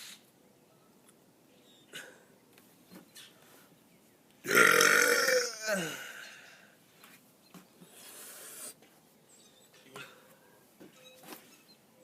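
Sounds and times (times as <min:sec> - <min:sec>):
man burping loudly: 0:04.4 - 0:06.2.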